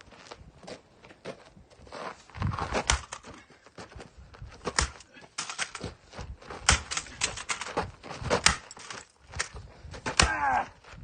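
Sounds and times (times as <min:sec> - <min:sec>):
sharp knocks and cracks: 0:02.7 - 0:03.4, 0:04.6 - 0:10.5.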